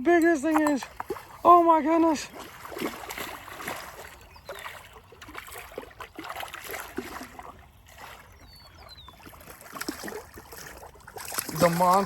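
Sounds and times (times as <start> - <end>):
pond water splashing: 0.0 - 12.0
faint bird chirp: 4.0 - 6.2, 7.8 - 9.6.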